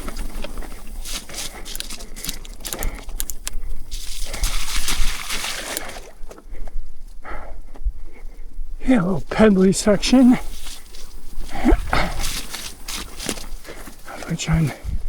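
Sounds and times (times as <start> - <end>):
tyres splashing through mud: 0.0 - 6.4, 9.4 - 14.7.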